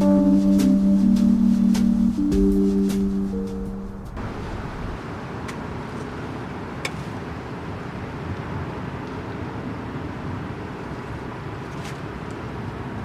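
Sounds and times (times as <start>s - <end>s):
fire low rumble: 0.8s - 5.1s.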